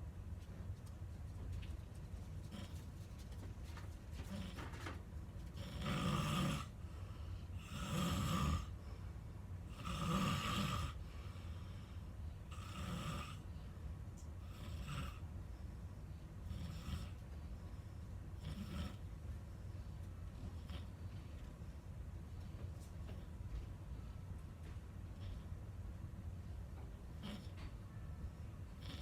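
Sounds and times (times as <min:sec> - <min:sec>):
person snoring: 0:07.6 - 0:08.7.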